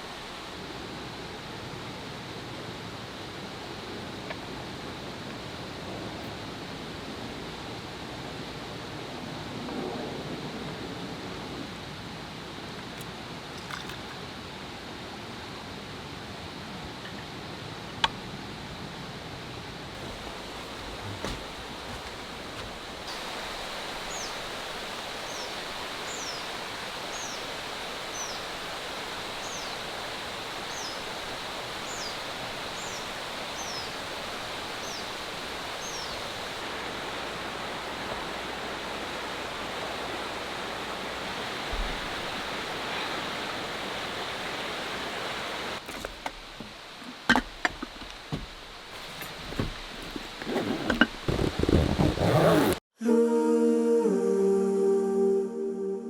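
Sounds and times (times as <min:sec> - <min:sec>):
bird chirping: 0:24.0 - 0:24.5.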